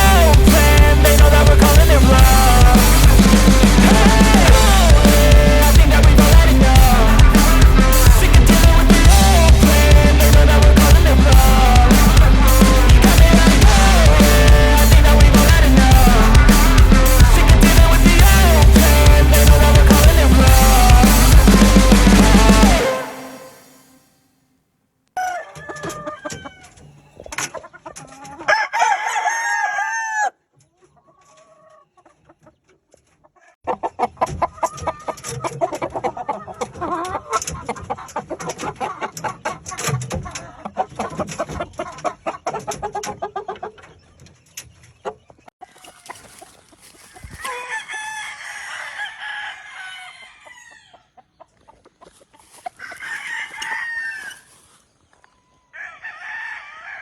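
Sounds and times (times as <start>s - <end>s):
roosters crowing: 0.0s - 23.7s, 25.2s - 27.3s, 28.2s - 30.4s, 45.6s - 51.2s, 52.4s - 54.8s, 55.5s - 57.0s.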